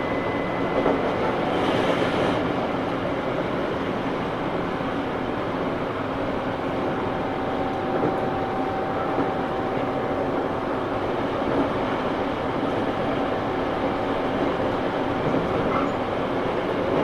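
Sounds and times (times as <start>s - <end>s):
train car rumble: 0.0s - 17.0s.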